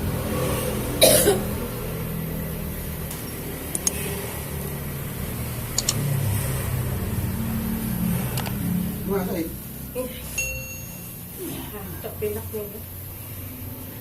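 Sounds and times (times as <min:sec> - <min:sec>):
person coughing: 0:01.0 - 0:01.6.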